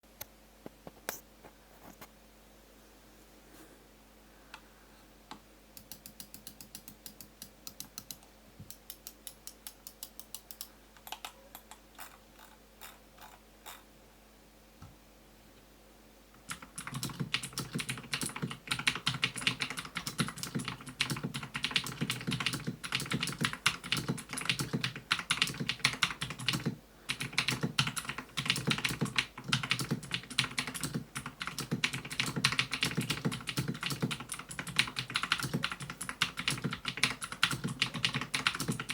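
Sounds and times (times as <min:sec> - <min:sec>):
fast typing on keyboard: 0:16.5 - 0:38.9
mechanical keyboard clicks: 0:16.5 - 0:38.9.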